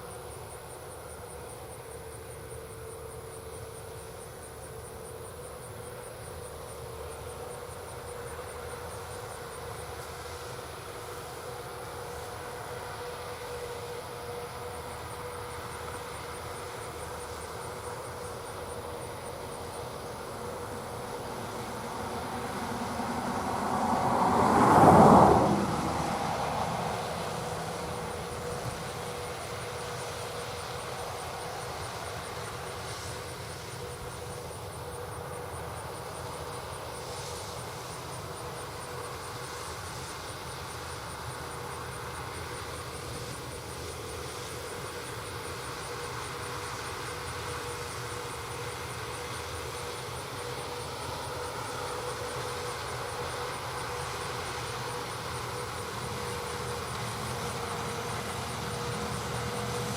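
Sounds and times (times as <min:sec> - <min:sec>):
constant whine: 0:00.0 - 0:59.9
steady machinery hum: 0:00.0 - 0:59.9
harvesting machinery passing: 0:20.2 - 0:30.5, 0:50.8 - 0:59.9.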